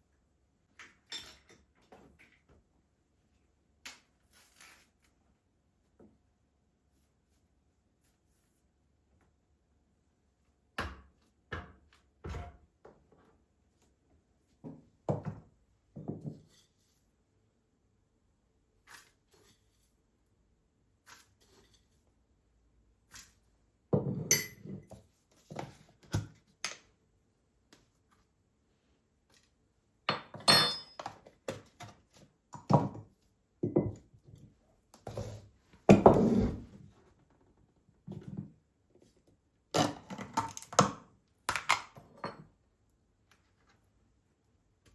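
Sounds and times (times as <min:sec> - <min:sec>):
objects knocking and thudding: 0:10.8 - 0:13.2, 0:14.6 - 0:16.5, 0:23.9 - 0:26.7, 0:35.0 - 0:36.9.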